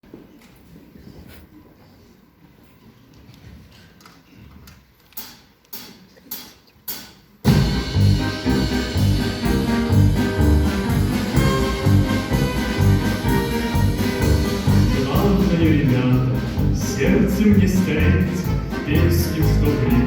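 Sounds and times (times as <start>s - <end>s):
band with brass and drums: 7.4s - 20.0s.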